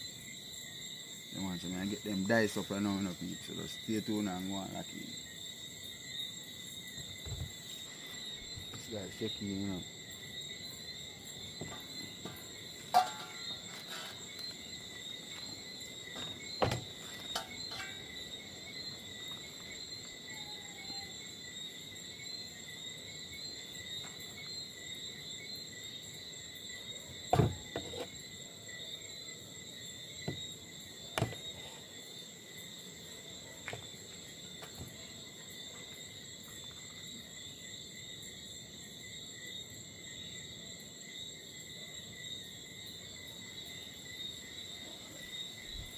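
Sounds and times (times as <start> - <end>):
crickets chirring: 0.0 - 45.9.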